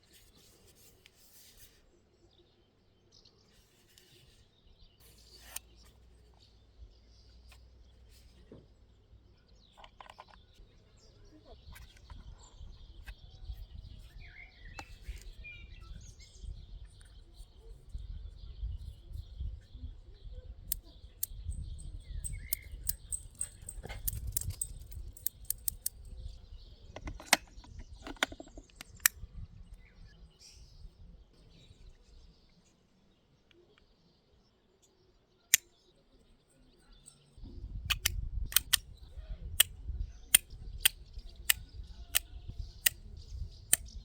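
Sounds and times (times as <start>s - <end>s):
bird chirps: 9.3s - 32.7s
sharp clicks and taps: 22.2s - 26.0s, 37.9s - 38.8s.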